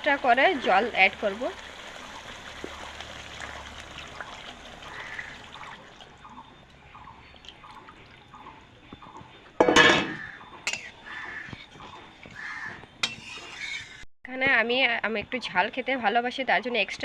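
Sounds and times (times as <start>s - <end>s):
curry bubbling in a pan: 0.0s - 9.5s, 10.3s - 14.0s
utensil clattering against pan: 9.6s - 10.9s, 13.0s - 14.0s.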